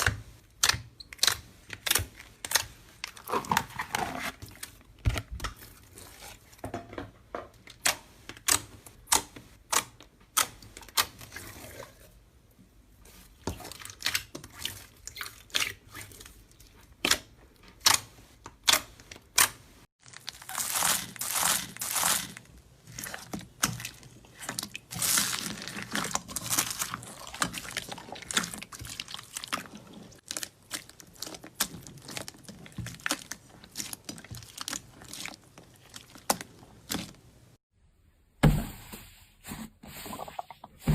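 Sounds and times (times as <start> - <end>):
slime popping and crackling: 17.0 - 37.2.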